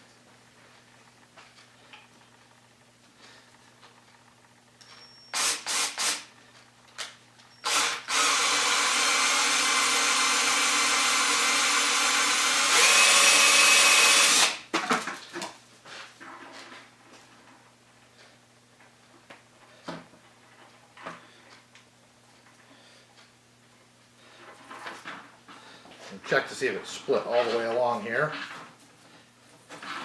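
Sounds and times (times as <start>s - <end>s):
power drill whining: 5.3s - 6.3s, 7.6s - 14.6s.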